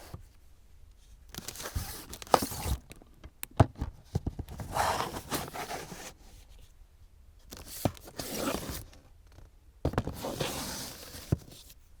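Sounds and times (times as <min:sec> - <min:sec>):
plastic cases scraping: 0:04.5 - 0:06.2, 0:07.5 - 0:09.0, 0:09.9 - 0:11.7.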